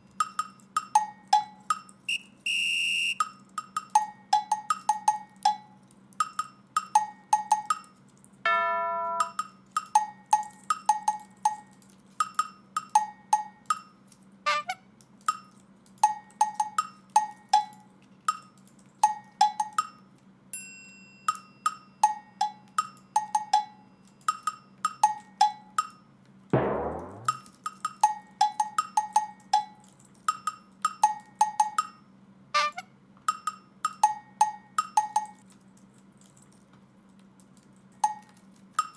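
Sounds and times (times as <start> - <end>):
held chord: 8.5 - 9.3
light percussion tune: 8.5 - 11.2, 26.6 - 27.5.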